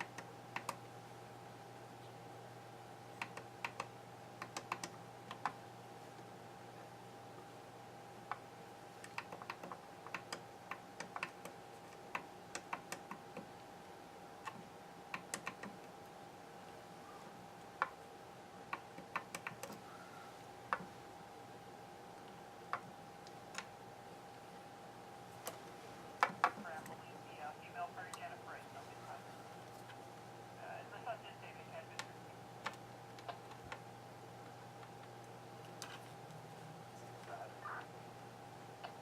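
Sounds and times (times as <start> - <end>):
faint steady tone: 15.8 - 18.8, 19.6 - 39.0.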